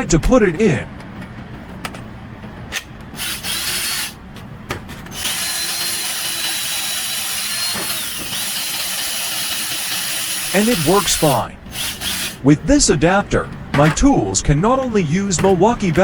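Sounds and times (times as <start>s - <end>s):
power tool motor whining: 3.2s - 4.2s, 5.1s - 12.5s.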